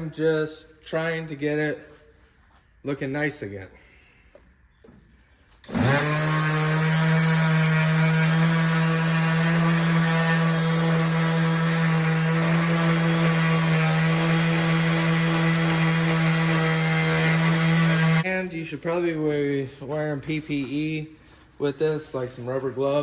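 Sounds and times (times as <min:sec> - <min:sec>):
power tool motor humming: 0:05.6 - 0:18.2.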